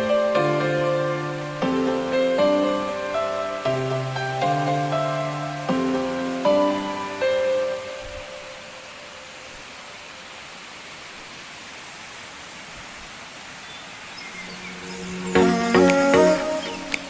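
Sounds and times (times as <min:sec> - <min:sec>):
music: 0:00.0 - 0:08.3, 0:14.6 - 0:17.0
faint chirps: 0:13.5 - 0:17.0.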